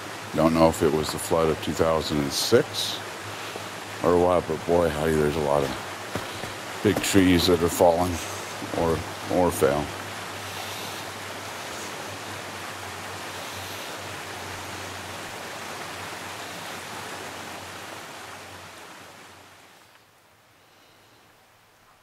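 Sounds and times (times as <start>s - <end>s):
steady rushing noise: 0.0s - 17.3s.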